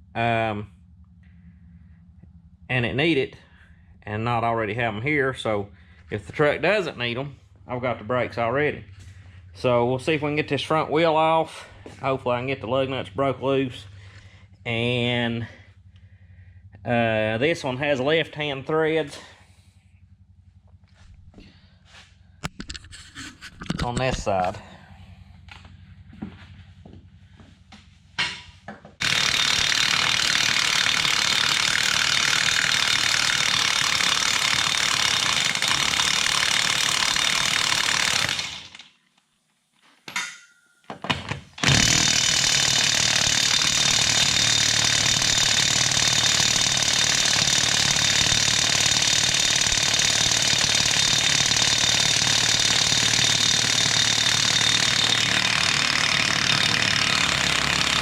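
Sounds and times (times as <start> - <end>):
impact wrench hammering: 28.2 - 38.9, 40.1 - 58.0.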